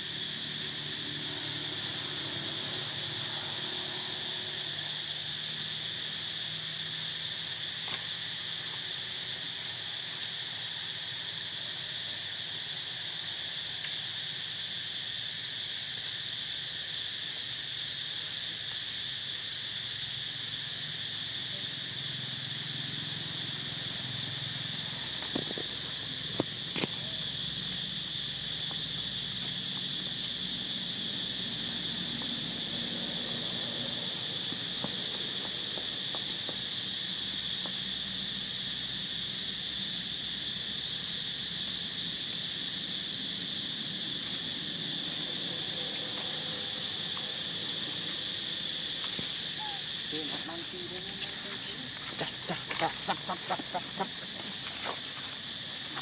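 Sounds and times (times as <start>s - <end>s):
insect chorus drone: 0.0s - 56.0s.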